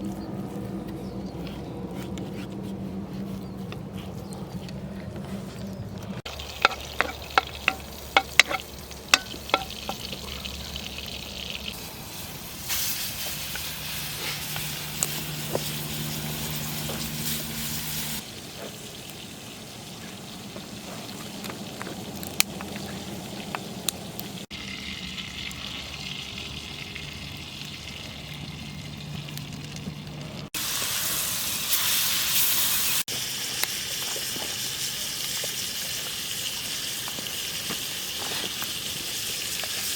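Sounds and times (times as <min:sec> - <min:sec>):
food sizzling in a pan: 0:06.3 - 0:21.4, 0:30.6 - 0:39.9.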